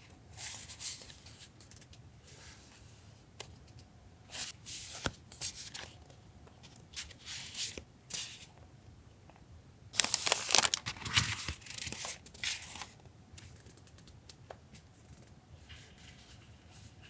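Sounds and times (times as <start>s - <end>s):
paper stickers rustling and crinkling: 10.0s - 12.8s.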